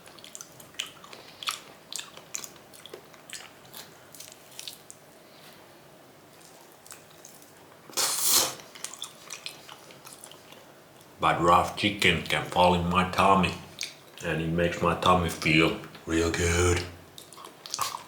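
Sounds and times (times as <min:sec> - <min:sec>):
wet chewing and biting: 0:17.2 - 0:18.0.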